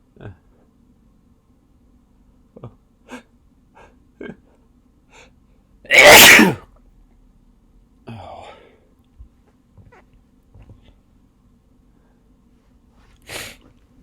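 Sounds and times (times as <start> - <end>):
person sneezing: 5.9 - 6.6.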